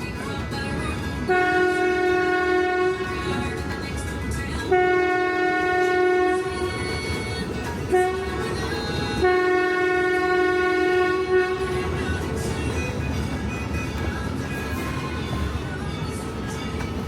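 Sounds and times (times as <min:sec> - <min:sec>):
moving train rumble: 0:00.0 - 0:17.0
train whistle blasts: 0:01.3 - 0:03.4, 0:04.7 - 0:06.7, 0:07.9 - 0:08.6, 0:09.2 - 0:12.0.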